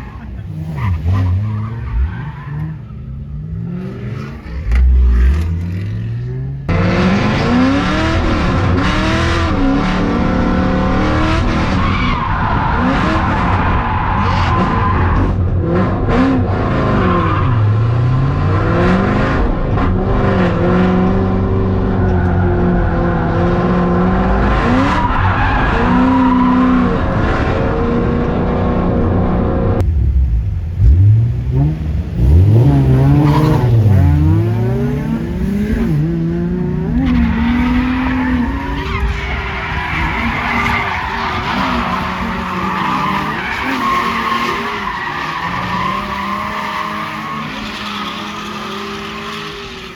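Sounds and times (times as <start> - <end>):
tyres squealing and skidding: 0.0 - 3.2, 7.0 - 15.4, 21.7 - 27.1, 32.6 - 49.9
car engine revving: 0.0 - 49.9.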